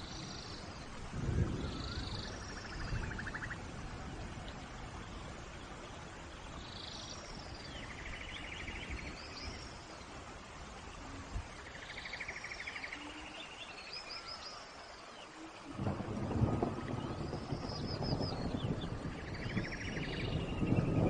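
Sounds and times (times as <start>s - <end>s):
rain hiss: 0.0s - 21.0s
songbird singing: 0.0s - 21.0s.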